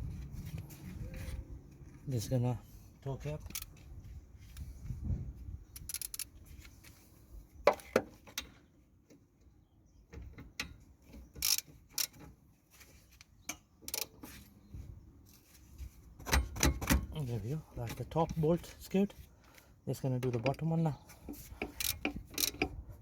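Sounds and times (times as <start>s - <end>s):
torque wrench ratcheting: 5.8s - 6.3s, 11.4s - 12.2s, 21.6s - 22.8s.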